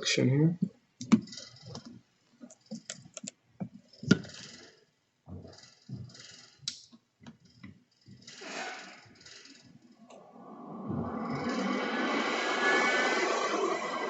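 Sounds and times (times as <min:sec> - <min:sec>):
small tools clicking and tapping: 0:01.0 - 0:04.4.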